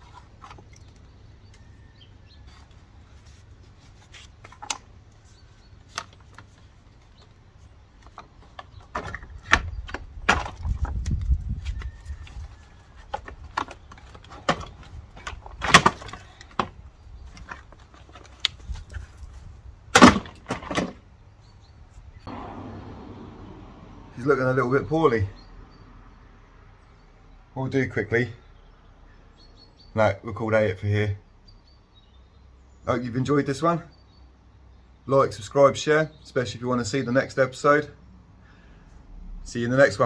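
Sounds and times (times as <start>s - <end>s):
car parts and tools clattering: 4.4s - 11.0s, 13.0s - 19.1s, 20.0s - 21.2s.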